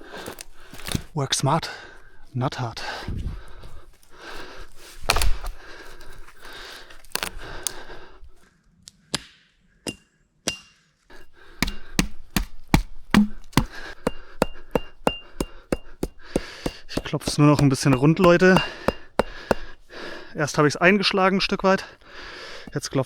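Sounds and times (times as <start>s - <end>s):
knocks on a wooden stake: 11.3s - 20.0s.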